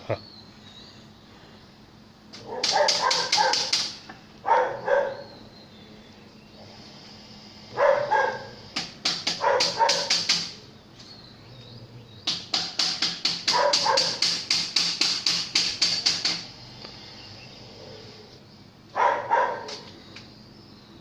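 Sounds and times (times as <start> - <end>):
large dog barking: 2.4 - 3.7, 4.4 - 5.4, 7.7 - 8.6, 9.4 - 10.1, 13.5 - 14.2, 18.9 - 19.9.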